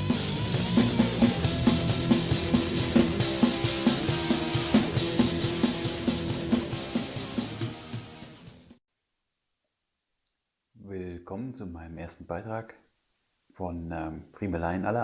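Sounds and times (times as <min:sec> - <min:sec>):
rock music with drum beat: 0:00.0 - 0:08.8.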